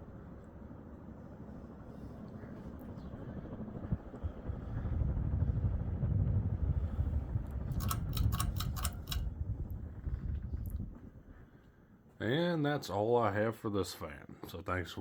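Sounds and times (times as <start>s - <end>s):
ceiling fan running: 3.2s - 12.8s
sharp clicks: 7.7s - 9.3s.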